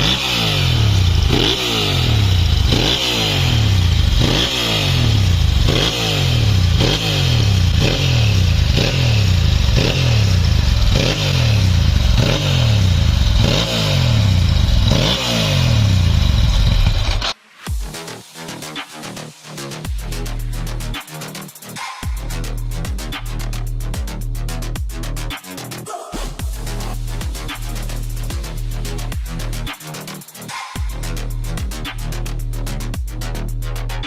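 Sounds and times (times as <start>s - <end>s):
motorcycle engine revving: 0.0s - 17.4s, 26.2s - 30.2s.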